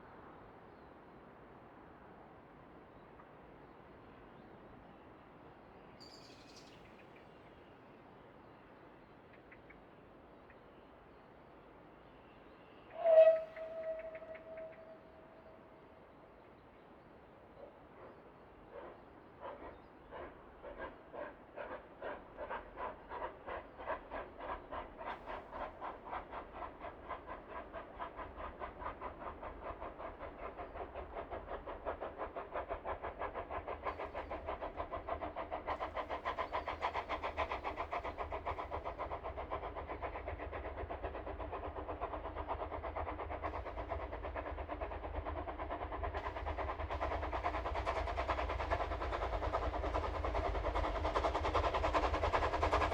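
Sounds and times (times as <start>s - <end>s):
steam locomotive chuffing: 12.9s - 16.1s, 17.8s - 52.9s.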